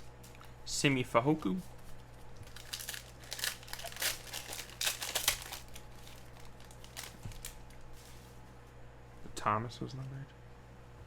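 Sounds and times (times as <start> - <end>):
cards and plastic crinkling: 1.4 - 8.4.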